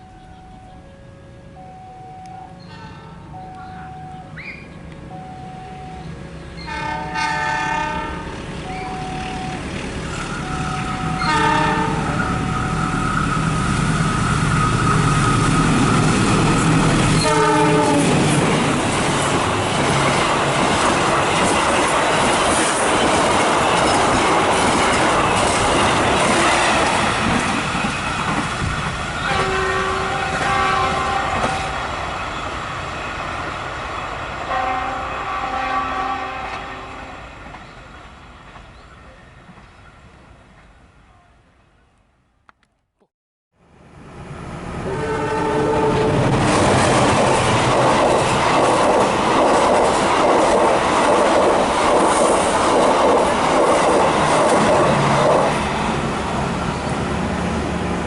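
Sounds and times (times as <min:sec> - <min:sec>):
train horn blasts: 0:05.3 - 0:09.6, 0:10.4 - 0:13.2, 0:17.1 - 0:18.3, 0:29.2 - 0:31.8, 0:34.5 - 0:37.3, 0:44.8 - 0:46.3
train wheel and running noise: 0:08.3 - 0:34.8, 0:43.7 - 0:58.0.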